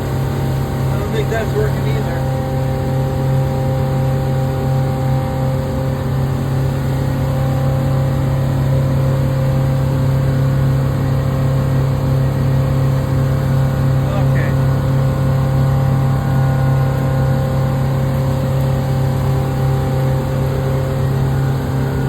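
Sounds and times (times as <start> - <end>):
boat engine running steadily: 0.0 - 22.0.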